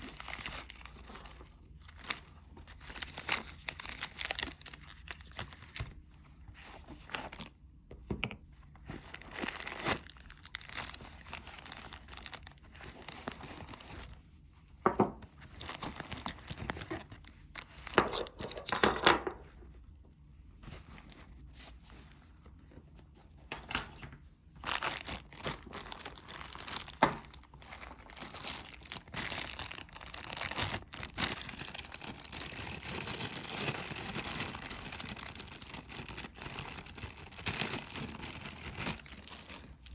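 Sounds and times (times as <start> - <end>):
bags crinkling and rustling: 0.0 - 7.6, 8.7 - 14.4, 15.3 - 18.8, 20.6 - 39.9.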